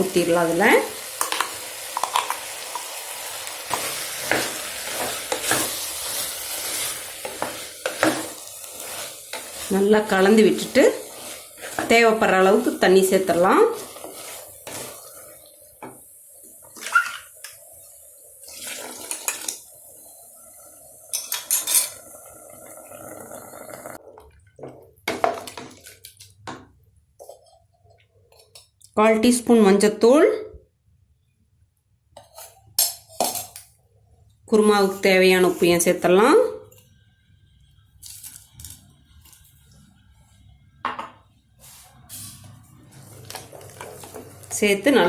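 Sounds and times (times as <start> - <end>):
food sizzling in oil: 0.0 - 24.0
spoon stirring and knocking pot: 1.2 - 2.9, 3.7 - 6.2, 6.8 - 15.1, 21.1 - 22.0, 32.2 - 33.7
water pouring into a pot: 16.7 - 24.3
metal spoon scraping a pot: 21.1 - 22.0, 32.2 - 33.6.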